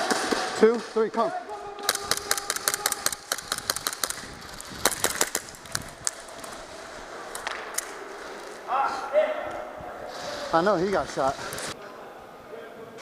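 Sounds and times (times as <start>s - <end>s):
airsoft guns firing: 1.8s - 6.3s.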